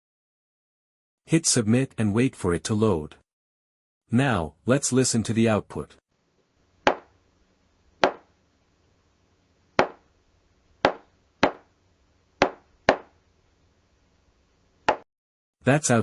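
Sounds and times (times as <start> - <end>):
hammer knocking on wood: 6.9 - 7.1, 8.0 - 8.2, 9.8 - 10.0, 10.9 - 11.6, 12.4 - 13.1.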